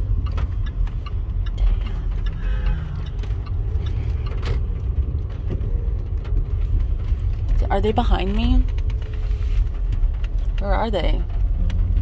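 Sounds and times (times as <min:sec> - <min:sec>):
road and engine rumble: 0:00.0 - 0:12.0.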